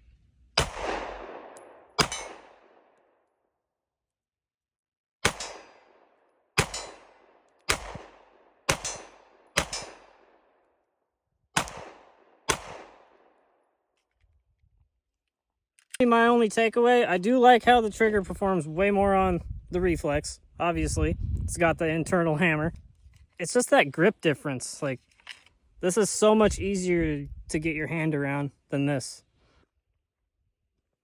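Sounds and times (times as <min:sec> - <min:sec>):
handgun shots: 0:00.6 - 0:02.8, 0:05.2 - 0:05.8, 0:06.6 - 0:10.2, 0:11.6 - 0:13.2.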